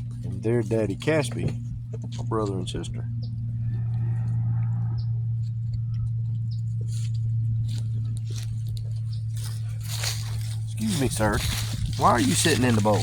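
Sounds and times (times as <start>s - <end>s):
steady low hum: 0.0s - 13.0s
light ticks and scuffles: 5.7s - 13.0s.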